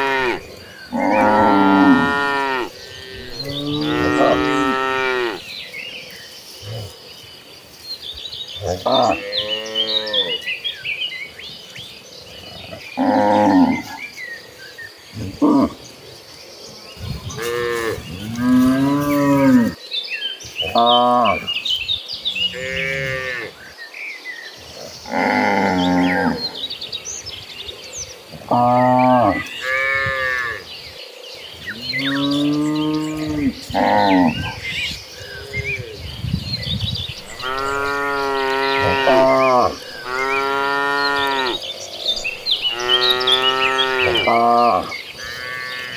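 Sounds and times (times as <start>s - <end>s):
cattle mooing: 0.0s - 5.5s, 37.3s - 45.9s
birds chirping faintly: 0.0s - 45.9s.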